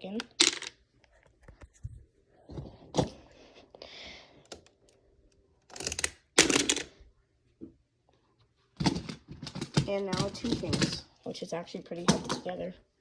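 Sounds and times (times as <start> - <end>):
plastic tiles clicking and clattering: 0.0 - 0.8, 5.7 - 7.0.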